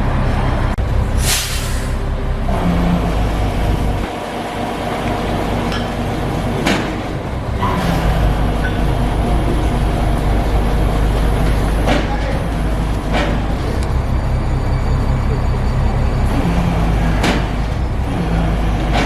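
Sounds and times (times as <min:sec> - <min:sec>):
heavy vehicle engine humming: 0:00.0 - 0:19.0
short hiss: 0:01.2 - 0:02.0.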